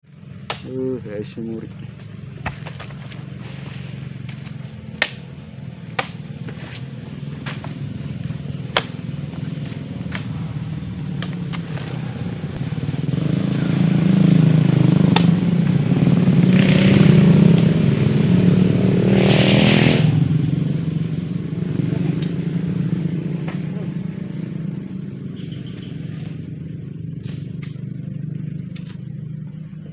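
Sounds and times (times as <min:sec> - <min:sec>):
vehicle engine running: 0:00.0 - 0:29.9.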